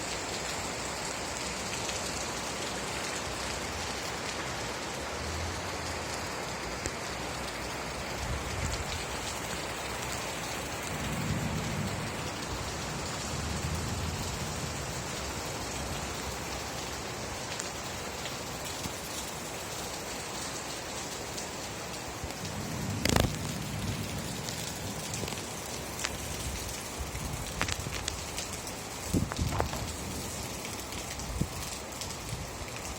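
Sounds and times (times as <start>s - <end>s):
steady rain: 0.0s - 32.9s
low thunder rumbles: 8.1s - 17.3s, 22.3s - 28.0s
sharp thunder crack: 10.7s - 16.2s, 22.5s - 25.3s.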